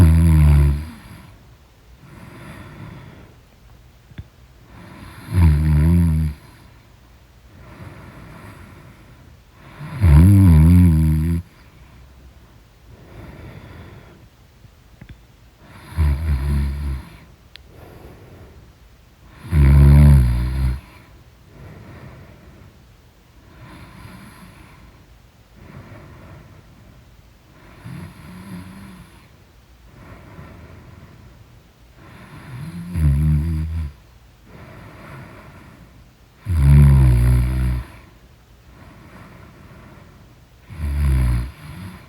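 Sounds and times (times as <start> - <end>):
loud rasping snores: 0.0 - 1.3, 4.8 - 6.6, 9.6 - 11.5, 15.7 - 18.6, 19.3 - 21.0, 27.6 - 29.2, 32.0 - 34.0, 36.4 - 38.0, 40.7 - 42.0
quiet breathing: 0.0 - 42.0.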